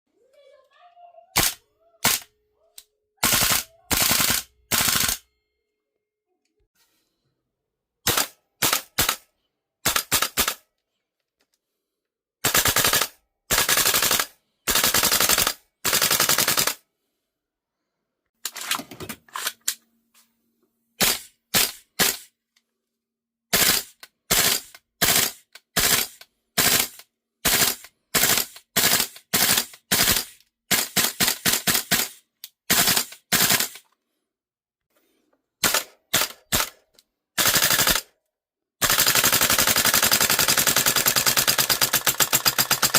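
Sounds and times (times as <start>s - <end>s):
airsoft rifle full-auto bursts: 3.2s - 5.2s, 8.0s - 9.2s, 9.8s - 10.6s, 12.4s - 16.8s, 21.0s - 22.3s, 23.5s - 33.9s, 35.6s - 36.8s, 37.4s - 38.1s, 38.8s - 42.9s.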